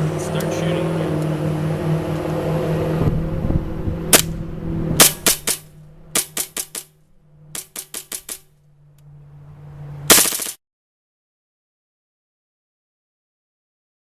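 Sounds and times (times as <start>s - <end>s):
airsoft gun firing bursts: 5.0s - 6.9s, 7.6s - 8.4s.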